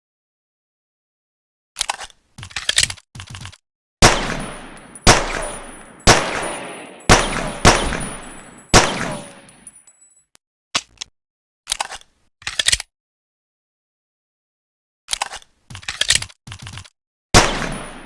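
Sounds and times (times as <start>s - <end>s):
pistol shots with ringing echo: 4.0s - 9.7s, 17.4s - 18.0s.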